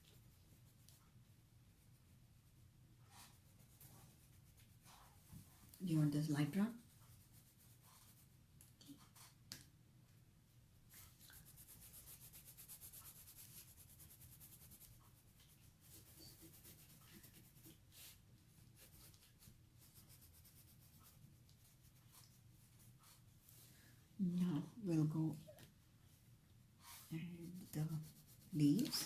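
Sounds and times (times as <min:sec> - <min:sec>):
pencils scratching on paper: 0:11.0 - 0:23.3, 0:27.0 - 0:29.0.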